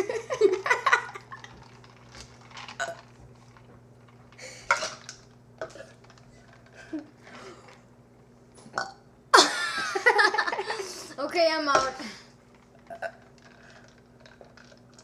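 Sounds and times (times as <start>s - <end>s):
drink containers clinking: 0.6s - 7.8s, 11.7s - 15.0s
liquid sloshing: 0.7s - 7.9s, 11.8s - 15.0s
burps: 2.6s - 3.2s, 8.6s - 9.1s, 12.0s - 15.0s
people drinking: 11.8s - 15.0s.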